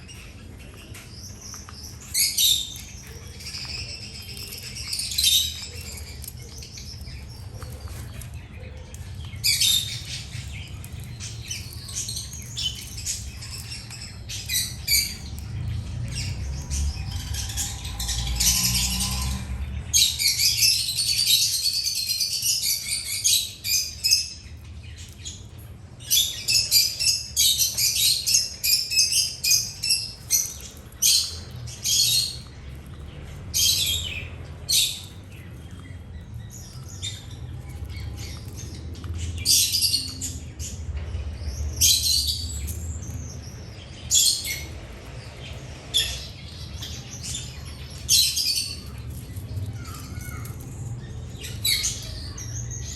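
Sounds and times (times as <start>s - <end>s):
small birds chirping: 0.0s - 52.9s
faint low rumble: 5.6s - 20.4s.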